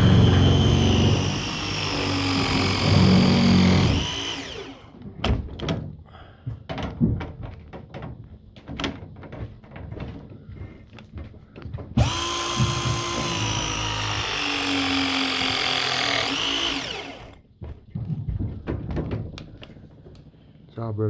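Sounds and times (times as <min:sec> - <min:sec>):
power tool motor running: 0:00.0 - 0:05.0, 0:12.0 - 0:17.4.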